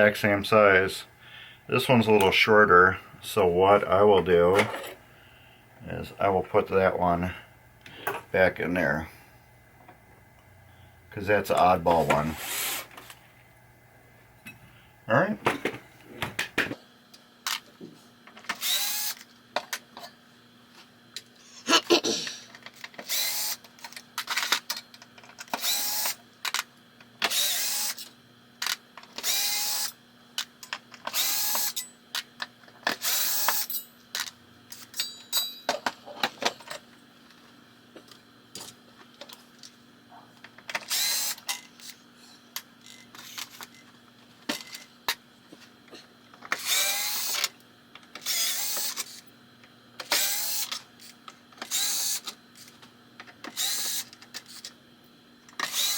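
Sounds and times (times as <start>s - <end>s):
cordless drill whirring: 18.6s - 19.2s, 23.0s - 23.6s, 25.6s - 26.2s, 27.3s - 28.0s, 29.2s - 30.0s, 31.1s - 31.8s, 33.0s - 33.7s, 40.9s - 41.4s, 46.6s - 47.4s, 48.2s - 49.2s, 50.1s - 50.7s, 51.6s - 52.3s, 53.5s - 54.6s, 55.6s - 55.9s
screws and parts clattering: 22.5s - 27.4s.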